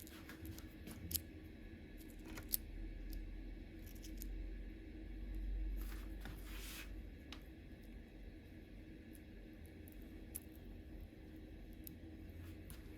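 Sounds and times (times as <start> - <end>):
brief rubbing or scraping: 5.9 - 7.0.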